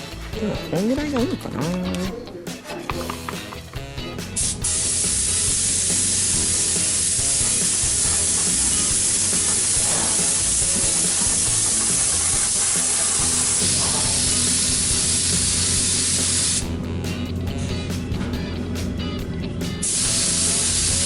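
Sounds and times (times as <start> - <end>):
background music: 0.0 - 21.0
paint spray gun hissing: 4.3 - 16.7, 19.8 - 21.0.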